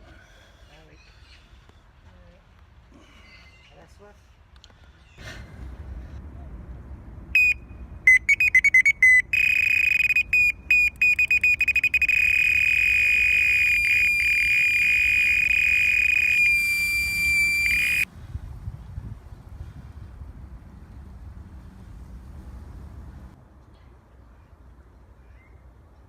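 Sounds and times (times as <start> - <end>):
electronic bite alarm beeping: 7.4 - 18.1.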